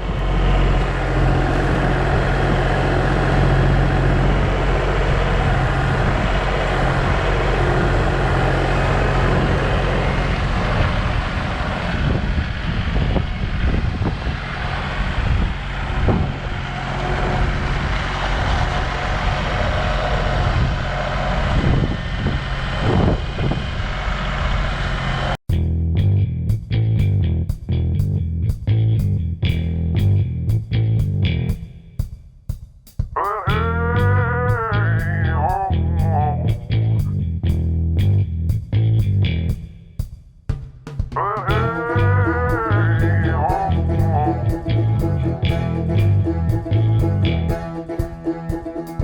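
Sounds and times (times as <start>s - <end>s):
machine engine running under load: 0.0s - 25.4s
music: 25.5s - 49.0s.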